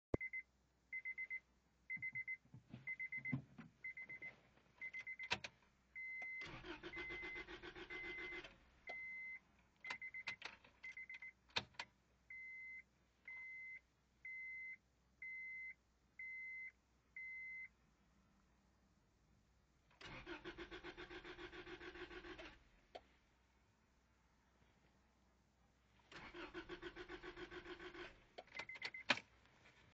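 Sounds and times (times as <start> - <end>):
car warning chime beeping: 1.0 - 5.4, 6.0 - 11.4, 12.3 - 17.7
starter cranking engine: 6.4 - 8.4, 20.0 - 22.6.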